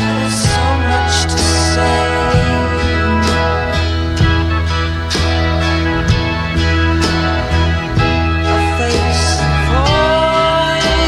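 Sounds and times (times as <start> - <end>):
rock music: 0.0 - 11.0.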